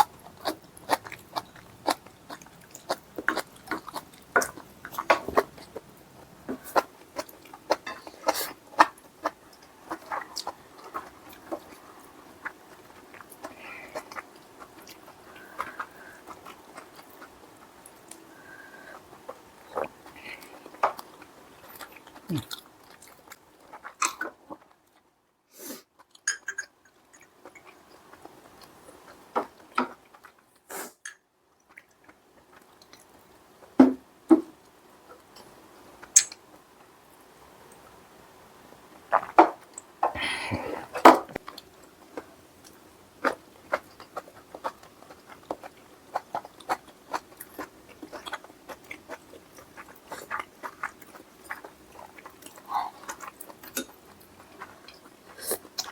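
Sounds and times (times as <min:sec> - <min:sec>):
close chewing and biting: 0:00.0 - 0:25.1, 0:40.9 - 0:55.9.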